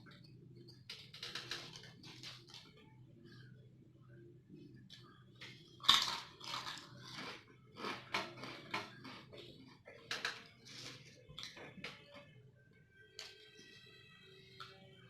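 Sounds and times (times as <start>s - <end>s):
potato chips crunched and chewed: 5.8s - 11.6s.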